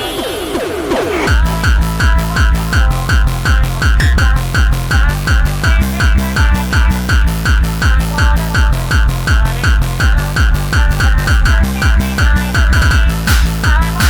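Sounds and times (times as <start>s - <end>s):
fast heavy kick drum: 1.3s - 14.0s
synth stab: 4.0s - 4.9s.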